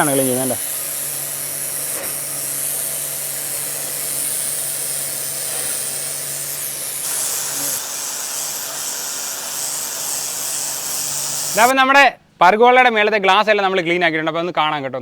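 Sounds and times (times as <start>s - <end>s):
pressure washer spraying water: 0.0s - 11.7s.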